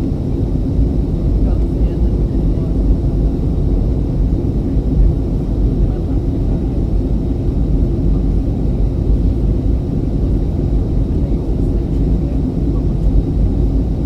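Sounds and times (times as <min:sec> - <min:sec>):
airliner cabin engine rumble: 0:00.0 - 0:14.0.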